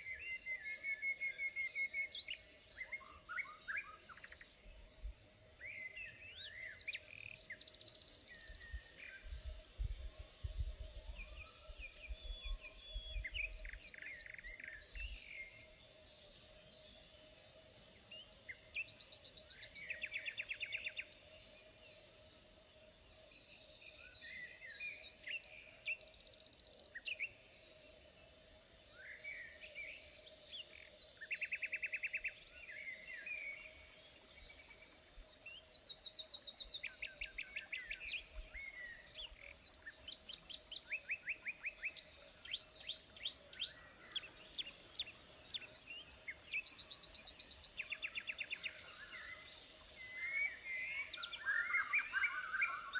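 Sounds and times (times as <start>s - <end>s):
birds chirping and trilling: 23.4s - 52.9s.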